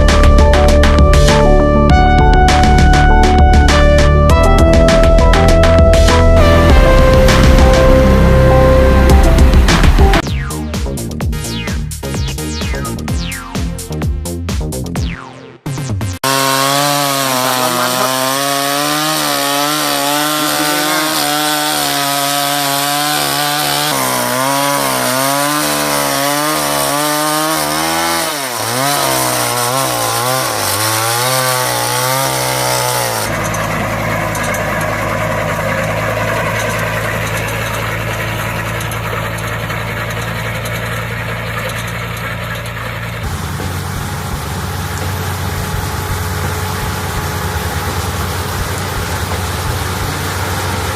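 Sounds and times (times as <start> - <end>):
small engine under load: 16.2 - 50.9.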